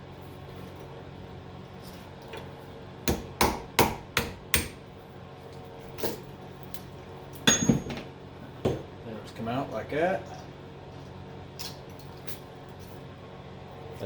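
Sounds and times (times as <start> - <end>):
hammer striking metal punch: 3.1 - 4.8, 7.5 - 8.0.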